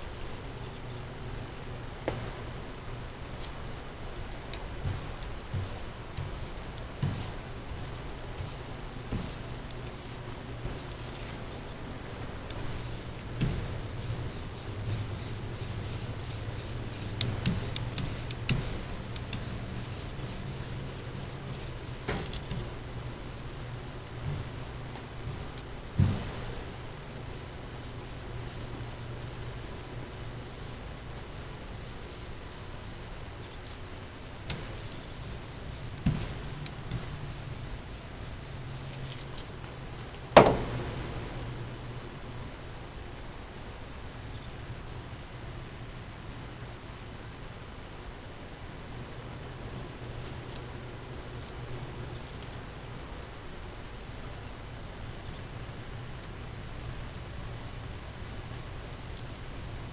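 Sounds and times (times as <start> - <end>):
low steady hum: 0.0 - 59.9
rubbing on fibreglass floor: 3.3 - 41.4, 55.3 - 59.9
short knocks: 40.3 - 41.1.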